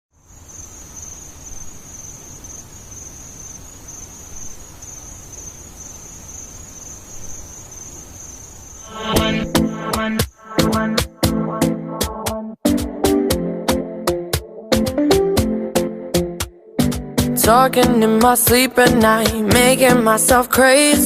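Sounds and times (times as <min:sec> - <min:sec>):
crickets chirping: 0:00.1 - 0:10.6
music with strong beat: 0:08.9 - 0:20.0.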